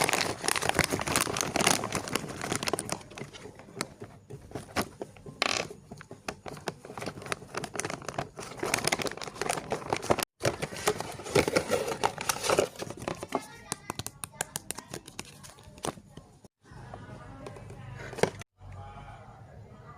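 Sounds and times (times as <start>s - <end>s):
plastic packaging crinkling: 0.0s - 3.9s, 6.8s - 13.6s.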